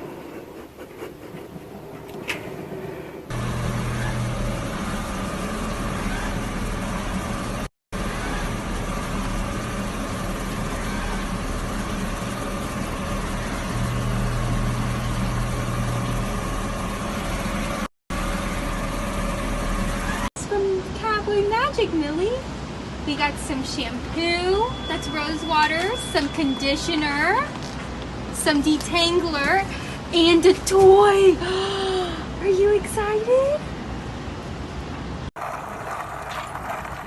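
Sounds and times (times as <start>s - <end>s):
steady motor hum: 0.0s - 20.7s.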